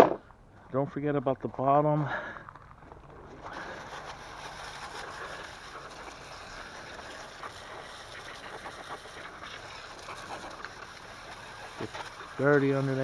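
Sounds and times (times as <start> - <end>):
hose water spraying: 3.2 - 13.0.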